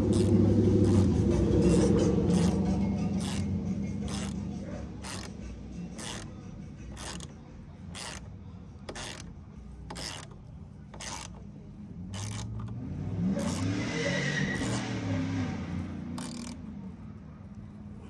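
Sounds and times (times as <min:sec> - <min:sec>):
engine revving: 0:00.0 - 0:08.3, 0:11.0 - 0:17.0
vehicle engine running: 0:00.0 - 0:18.0.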